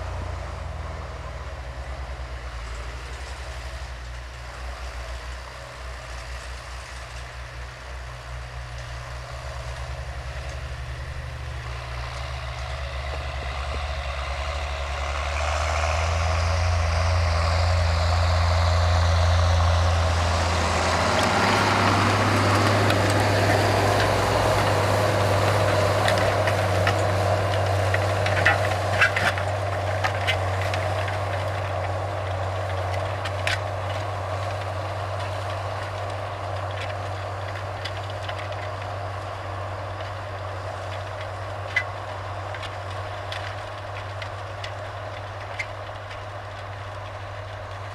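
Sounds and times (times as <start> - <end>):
tractor diesel engine: 0.0 - 47.9.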